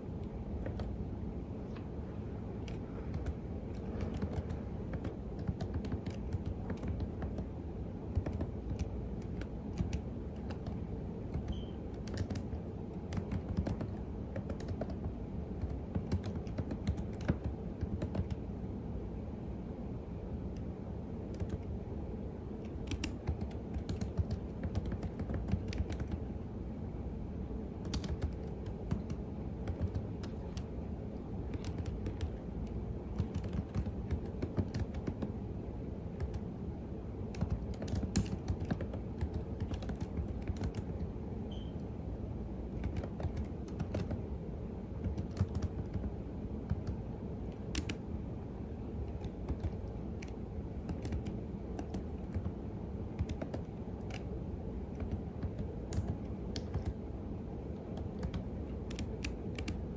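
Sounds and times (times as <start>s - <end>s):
low steady hum: 0.0s - 59.9s
typing on computer keyboard: 0.5s - 1.0s, 2.6s - 18.5s, 21.3s - 21.8s, 22.6s - 26.3s, 27.8s - 30.8s, 31.4s - 35.4s, 36.1s - 36.5s, 37.2s - 41.9s, 42.7s - 44.3s, 45.0s - 48.1s, 49.0s - 57.1s, 57.8s - 59.9s.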